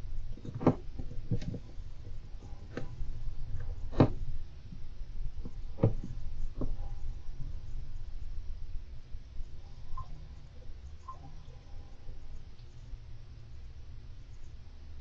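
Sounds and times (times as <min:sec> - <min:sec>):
steady low rumble: 0:00.0 - 0:15.0
hamster clicks and knocks in cage: 0:00.4 - 0:01.7, 0:02.4 - 0:03.0, 0:03.6 - 0:04.3, 0:05.4 - 0:06.9.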